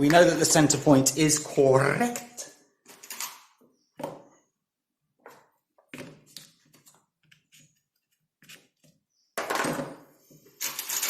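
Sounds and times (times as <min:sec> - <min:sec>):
plastic parts clicking and knocking: 0:09.4 - 0:11.0.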